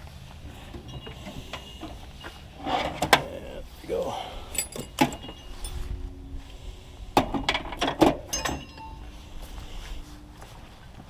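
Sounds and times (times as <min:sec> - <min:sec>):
metal tools clinking: 0:00.7 - 0:03.5, 0:04.1 - 0:06.0, 0:07.4 - 0:09.2
sharp ringing knocks: 0:07.2 - 0:09.1.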